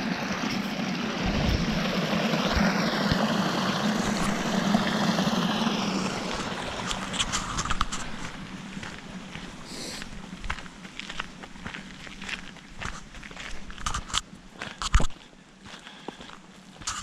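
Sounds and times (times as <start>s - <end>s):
waterfall rushing: 0.0s - 8.3s.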